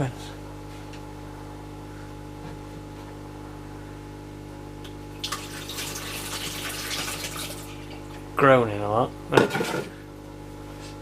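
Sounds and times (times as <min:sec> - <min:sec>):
dishwasher pump humming: 0:04.4 - 0:11.0
water rushing into dishwasher: 0:05.2 - 0:08.1, 0:09.4 - 0:10.0.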